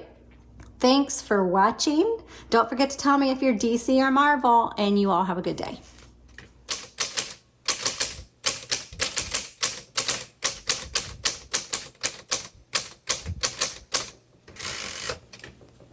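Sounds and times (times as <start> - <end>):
typewriter key strikes: 6.7 - 15.5
typewriter scraping: 6.7 - 15.5.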